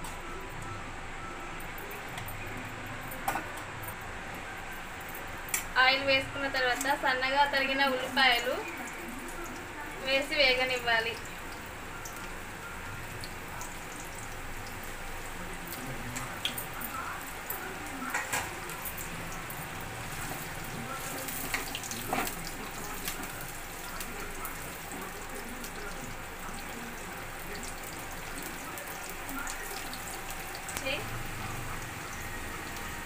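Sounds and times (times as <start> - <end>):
onions sizzling in oil: 6.8 - 33.0.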